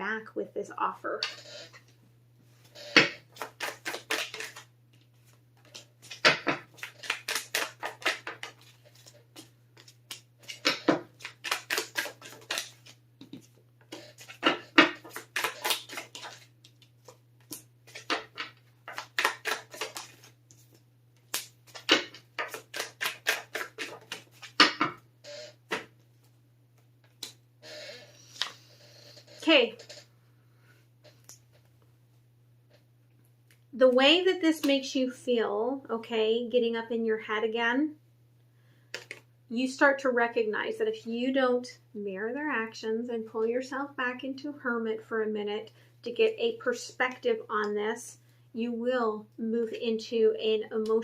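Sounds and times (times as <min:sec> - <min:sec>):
cards being shuffled by hand: 0:02.5 - 0:30.0, 0:38.9 - 0:39.2.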